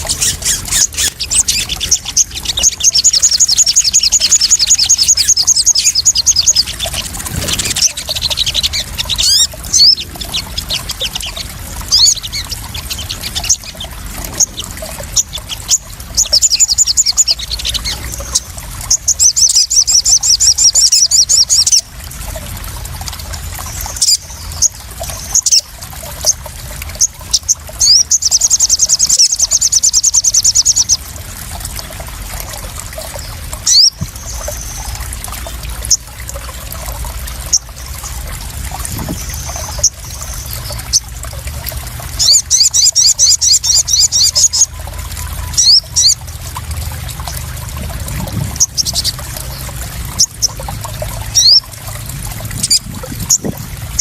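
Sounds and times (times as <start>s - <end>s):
sunbird high-pitched trills: 0.0s - 21.9s, 42.2s - 46.2s
water splashing and trickling: 0.0s - 54.0s.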